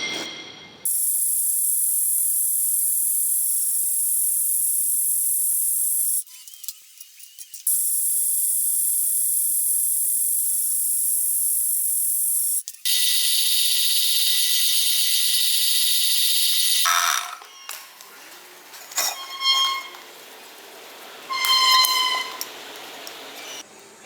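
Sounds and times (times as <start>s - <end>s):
power tool whining on metal: 12.8s - 17.5s.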